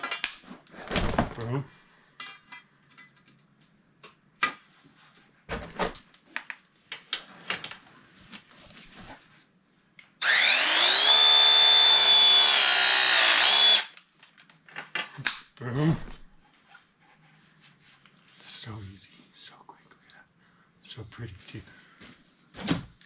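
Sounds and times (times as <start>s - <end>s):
power tool motor whine: 10.2s - 14.0s.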